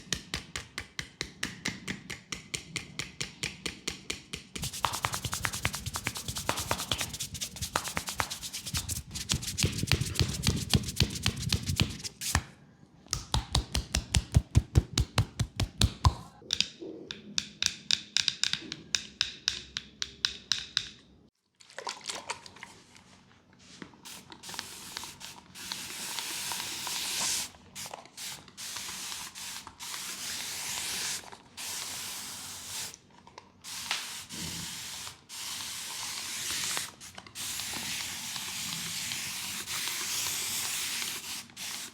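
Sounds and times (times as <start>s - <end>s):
hands tapping on skin: 0.1s - 12.0s, 13.1s - 16.3s
hands slapping skin: 4.3s - 12.4s, 13.1s - 16.3s.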